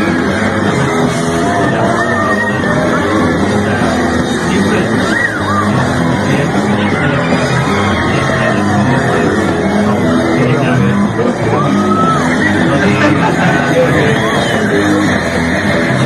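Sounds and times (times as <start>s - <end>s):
rock music with singing: 0.0s - 16.0s.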